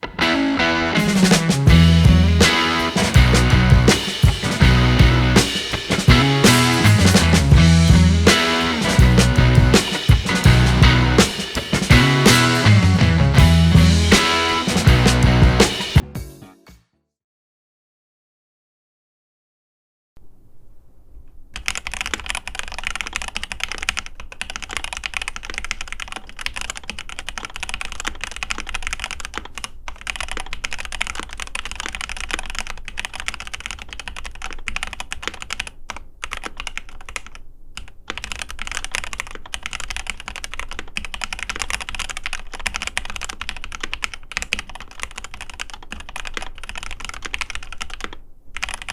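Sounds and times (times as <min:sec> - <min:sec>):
mechanical keyboard typing: 0:21.6 - 0:48.9.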